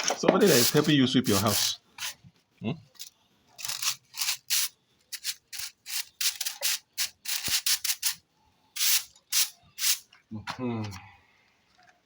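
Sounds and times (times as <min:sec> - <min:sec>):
broom sweeping a floor: 0:00.3 - 0:02.2.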